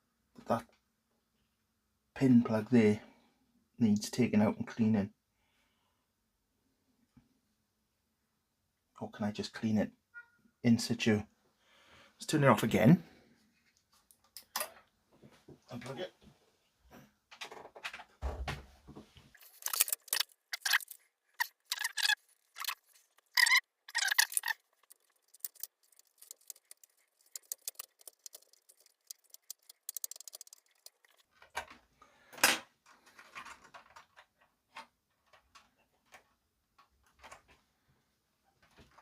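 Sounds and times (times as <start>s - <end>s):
clicks and rattles of hands working: 17.3s - 37.7s.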